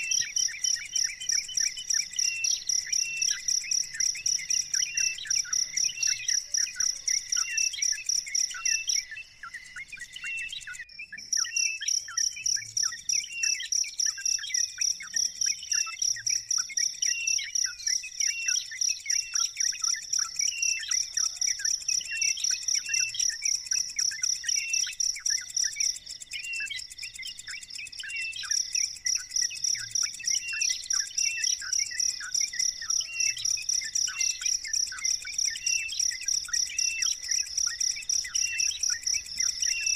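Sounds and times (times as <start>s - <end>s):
bird chicks peeping: 20.0s - 39.9s.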